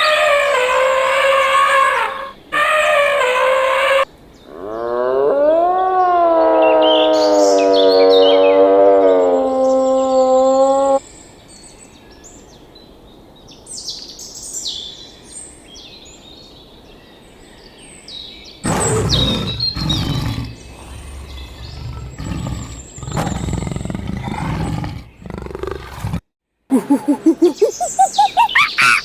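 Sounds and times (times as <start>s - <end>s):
small birds chirping: 13.5s - 26.2s, 26.9s - 29.0s
animal growling calls: 18.6s - 26.2s, 26.8s - 29.0s.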